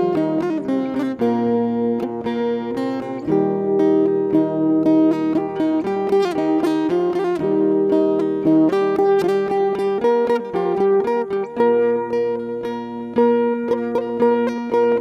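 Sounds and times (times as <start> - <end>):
plucked string music: 0.0 - 15.0.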